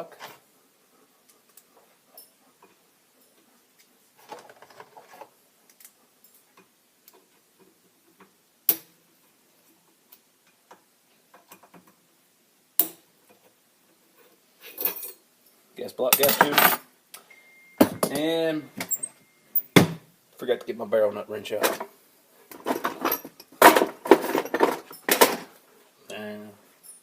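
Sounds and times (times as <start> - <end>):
rustling scrape: 4.2 - 5.4.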